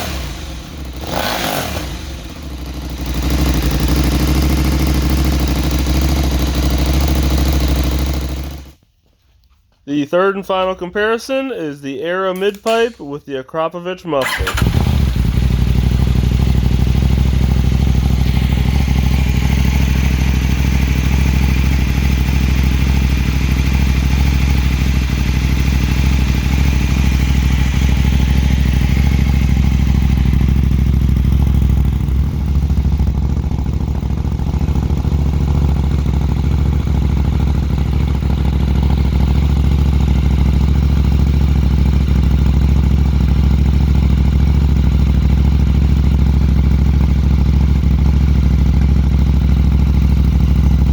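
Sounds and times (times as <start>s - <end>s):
motorcycle engine idling: 0.0s - 8.8s, 14.2s - 50.9s.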